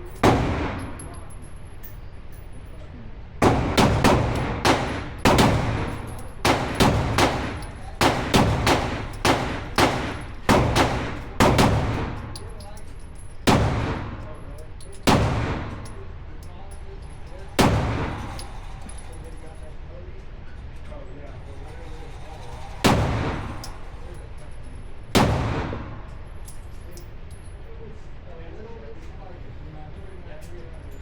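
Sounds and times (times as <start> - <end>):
gunshots with echo: 0.0 - 1.2, 3.4 - 12.4, 13.5 - 14.4, 15.1 - 15.9, 17.6 - 18.5, 22.8 - 23.8, 25.2 - 26.2.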